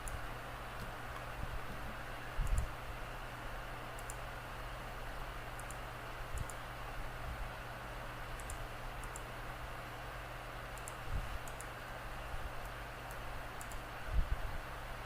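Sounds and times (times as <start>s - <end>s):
electrical hum and hiss: 0.0s - 15.0s
computer mouse clicking: 2.4s - 2.7s, 4.0s - 4.2s, 5.6s - 6.6s, 8.4s - 9.3s, 10.7s - 11.8s, 12.6s - 13.9s.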